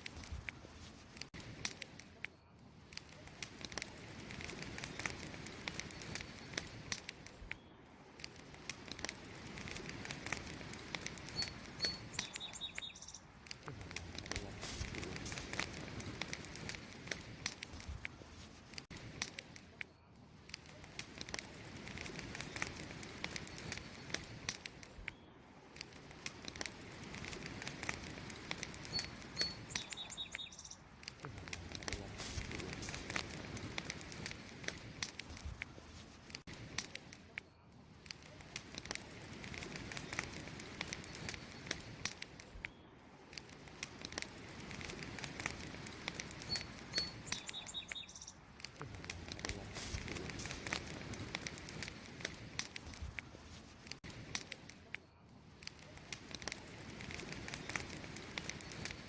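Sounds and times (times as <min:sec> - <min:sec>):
campfire hissing and crackling: 0:00.0 - 0:59.0
faint high chirps: 0:11.2 - 0:13.3, 0:28.8 - 0:30.9.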